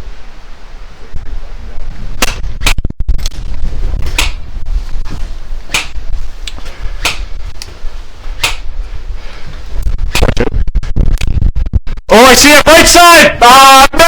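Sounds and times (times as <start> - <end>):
low rumble on microphone: 0.0 - 12.0
airsoft gun shots: 2.2 - 2.8.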